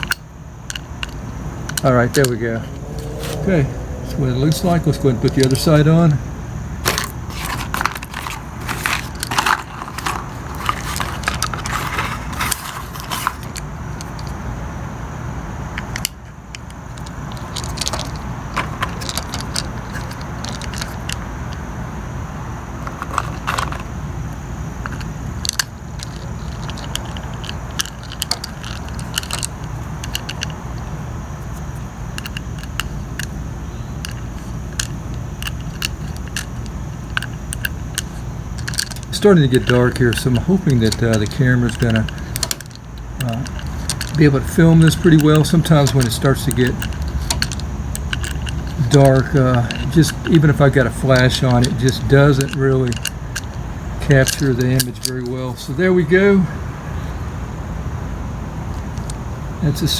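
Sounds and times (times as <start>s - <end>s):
steady low hum: 0.0s - 59.9s
small metal parts clicking: 6.9s - 14.3s, 15.8s - 21.2s, 24.8s - 30.6s, 32.2s - 33.4s, 34.0s - 55.4s, 58.7s - 59.2s.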